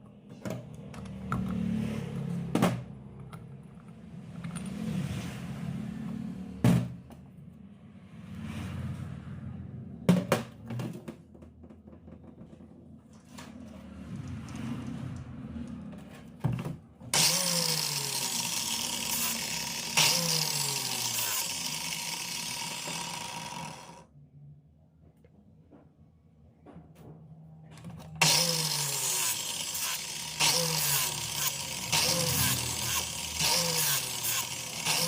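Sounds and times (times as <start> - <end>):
small power tool running: 17.1 - 24.1, 28.2 - 35.0.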